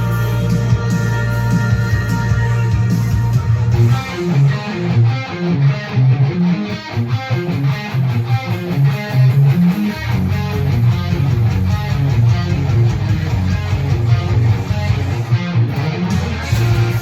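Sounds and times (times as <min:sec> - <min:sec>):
bass line: 0:00.0 - 0:05.1, 0:10.0 - 0:15.2, 0:15.9 - 0:17.0
guitar music: 0:00.0 - 0:17.0.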